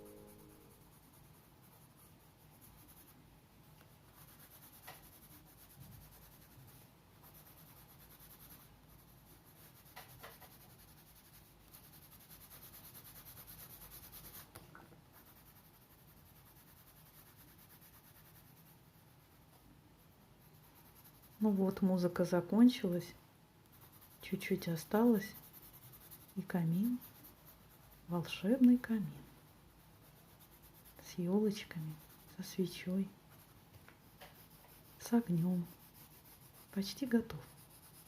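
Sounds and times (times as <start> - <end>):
pencils scratching on paper: 0.0 - 14.6, 15.2 - 38.0.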